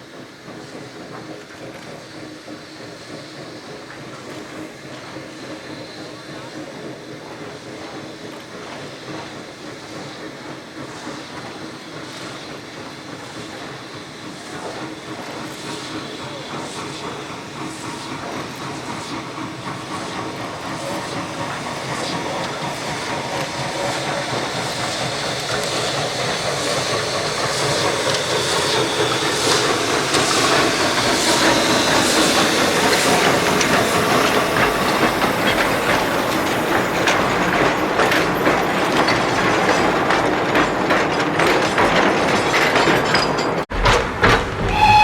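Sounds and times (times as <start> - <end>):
steam locomotive running and hissing: 0.0 - 45.0
rattling wheel clicks: 31.0 - 45.0.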